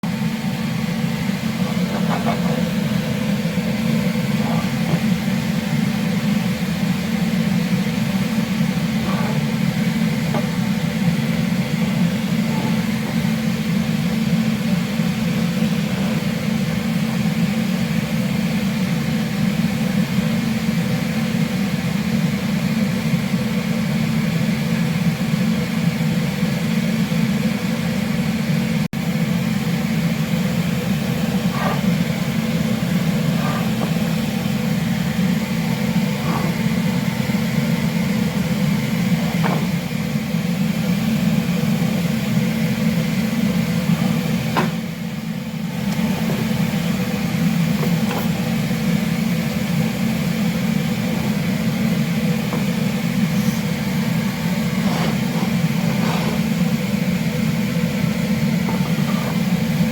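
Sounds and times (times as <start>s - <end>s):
ship machinery hum: 0.0s - 59.9s.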